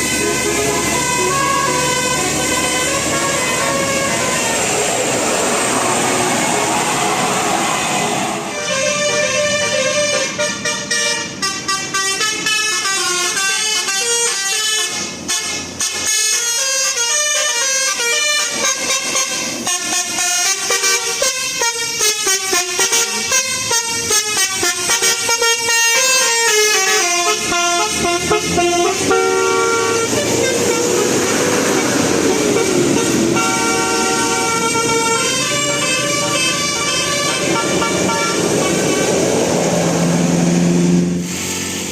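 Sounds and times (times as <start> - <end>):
multi-tone musical bus horn: 0.0 - 41.9.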